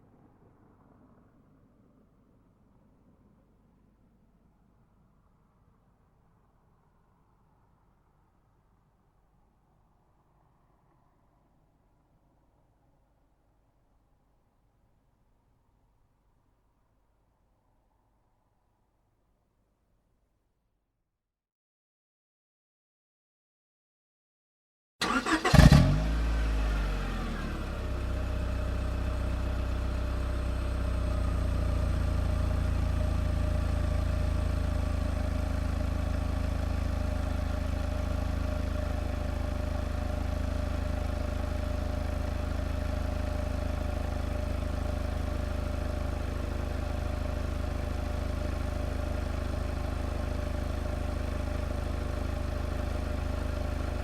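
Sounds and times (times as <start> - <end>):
car starter cranking: 25.0 - 26.2
car engine revving and idling: 25.0 - 54.0.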